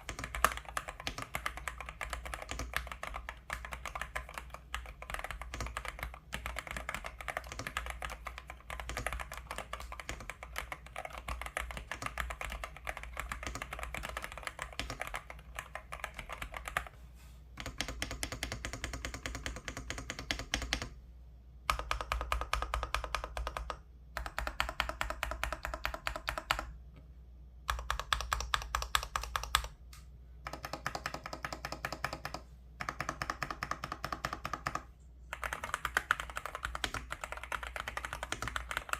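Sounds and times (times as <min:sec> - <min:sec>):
fast typing on mechanical keyboard: 0:00.0 - 0:16.9, 0:17.6 - 0:21.0, 0:21.7 - 0:26.7, 0:27.7 - 0:29.8, 0:30.5 - 0:38.9.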